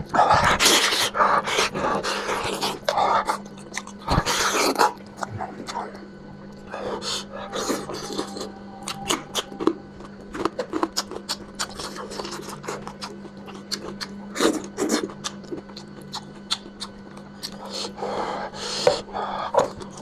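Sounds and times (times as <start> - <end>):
lips smacking and chewing: 7.7 - 18.0.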